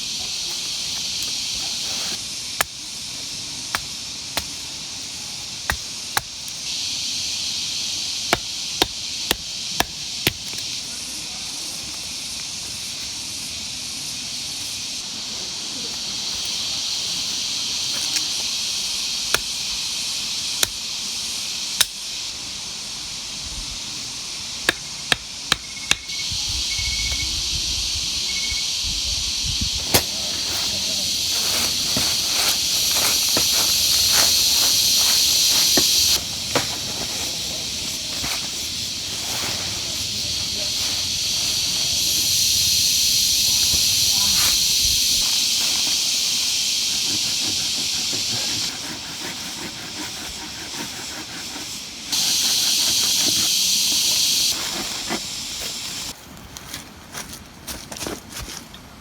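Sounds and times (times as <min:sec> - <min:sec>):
rain hissing: 0:26.2 - 0:48.6, 0:51.7 - 0:56.2.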